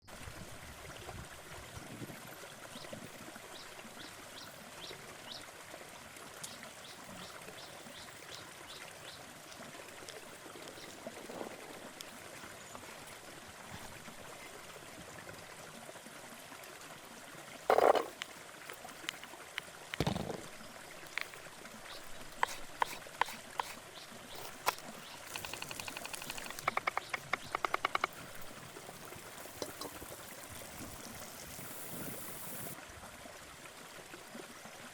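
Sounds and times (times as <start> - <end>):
water ambience: 0.0 - 34.9
faint chirps: 23.6 - 32.8
sharp clicks: 24.4 - 30.1
quick even chopping taps: 25.4 - 28.2.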